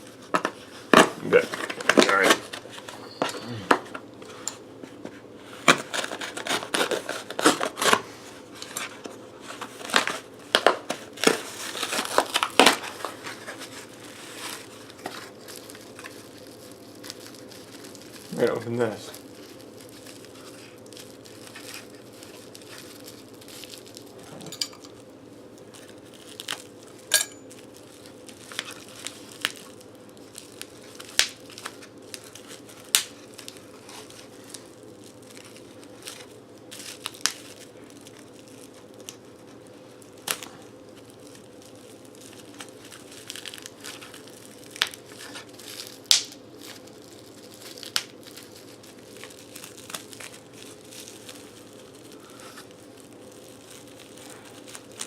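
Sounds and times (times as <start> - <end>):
faint steady hum: 0.0 - 55.0
packaging crinkling and tearing: 0.0 - 55.0.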